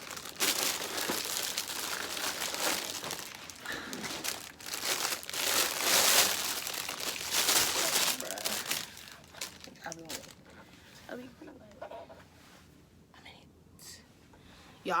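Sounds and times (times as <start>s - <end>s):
plastic packaging crinkling: 0.0s - 10.5s.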